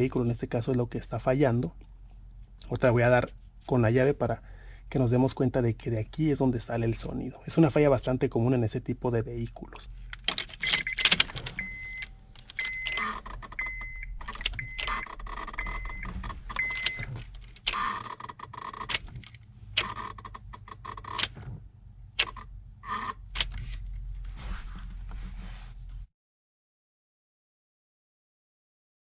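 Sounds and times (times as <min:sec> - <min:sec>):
key jangling in ignition: 0:10.2 - 0:11.7
short high beep: 0:15.6 - 0:17.1.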